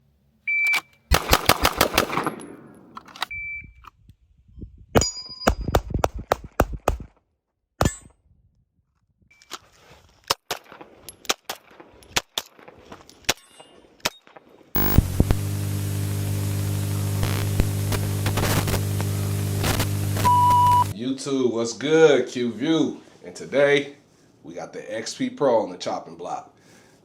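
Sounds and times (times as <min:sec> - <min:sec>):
pistol shots: 0:01.1 - 0:03.0
shot timer beep: 0:20.2 - 0:20.9.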